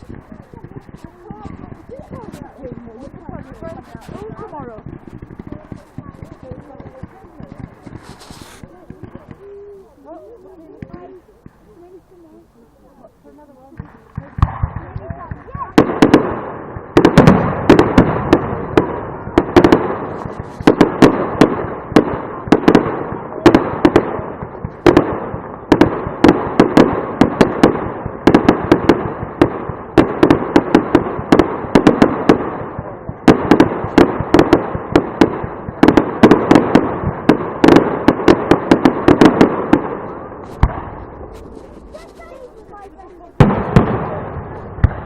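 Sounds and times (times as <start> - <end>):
fireworks banging with echo: 0.0 - 45.0.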